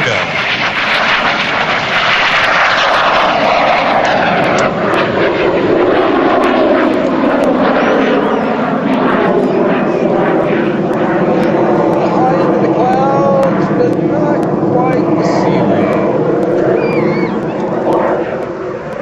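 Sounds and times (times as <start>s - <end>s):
jet aircraft passing low: 0.0s - 19.0s.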